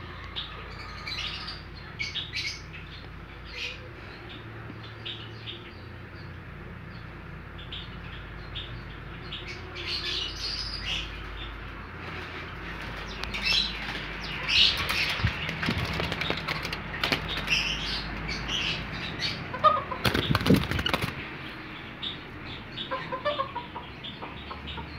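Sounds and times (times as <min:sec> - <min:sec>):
small birds chirping: 0:00.0 - 0:24.9
wings flapping: 0:13.9 - 0:17.7, 0:20.0 - 0:21.3.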